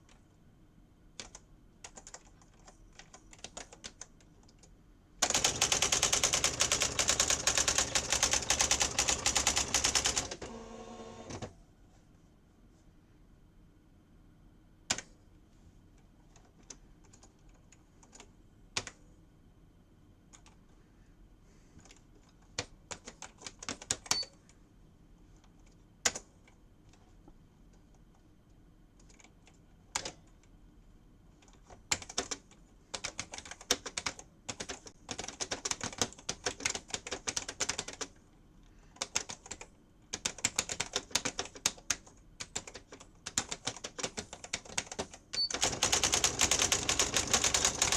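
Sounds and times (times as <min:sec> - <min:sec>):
typewriter clattering strikes: 0:45.6 - 0:47.9.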